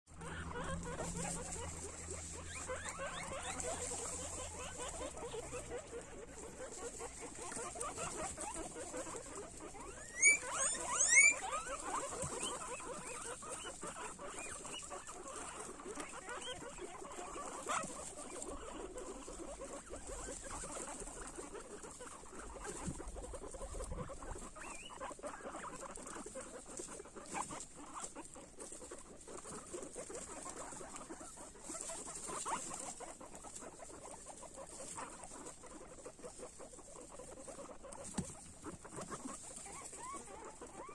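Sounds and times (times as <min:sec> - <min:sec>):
guinea pigs crunching food: 0:00.1 - 0:40.9
high squeaks: 0:07.6 - 0:14.8.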